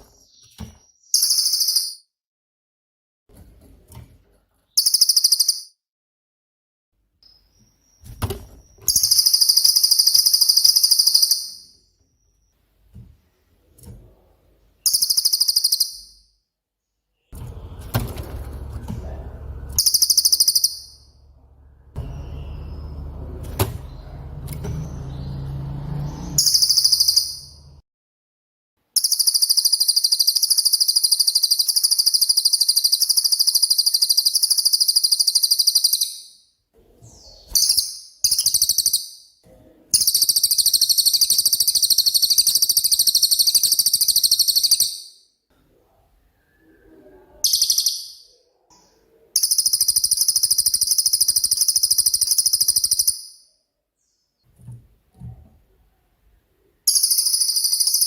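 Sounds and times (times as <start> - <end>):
bird singing rapid trills: 19.8 - 21.2, 22.0 - 24.1, 24.8 - 27.8, 37.1 - 39.4, 40.0 - 45.2, 49.4 - 53.5, 56.9 - 58.0.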